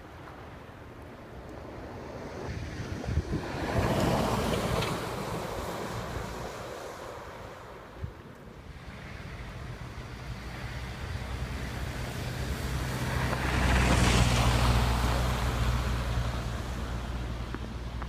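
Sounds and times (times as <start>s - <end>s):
vehicle driving past: 8.7s - 17.4s.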